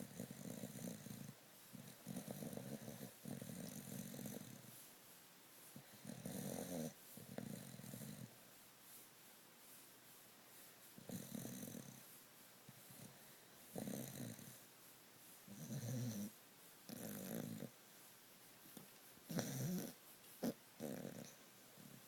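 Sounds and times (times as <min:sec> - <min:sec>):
pet snoring: 0:00.0 - 0:04.7, 0:05.8 - 0:08.4, 0:11.0 - 0:12.1, 0:12.9 - 0:14.6, 0:15.5 - 0:17.8, 0:19.3 - 0:22.0.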